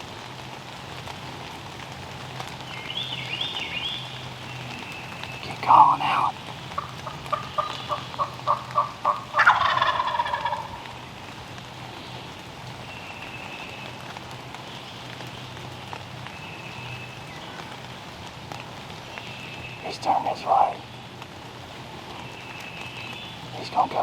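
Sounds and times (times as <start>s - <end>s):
light rain patter: 0.0s - 24.0s
turkey gobbling: 5.7s - 11.0s
turkey yelps: 5.9s - 11.0s.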